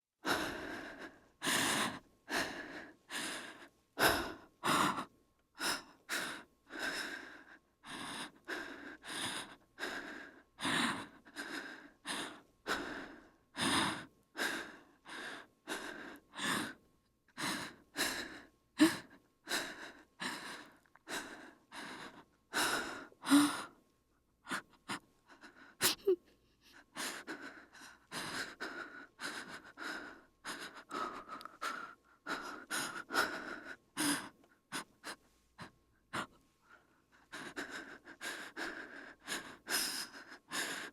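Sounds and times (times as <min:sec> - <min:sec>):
woman gasping breaths: 0:24.5 - 0:40.9.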